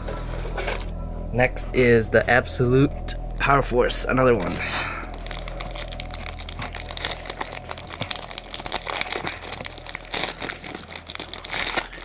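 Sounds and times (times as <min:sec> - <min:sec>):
foil wrapper crinkling and tearing: 0:05.0 - 0:12.0.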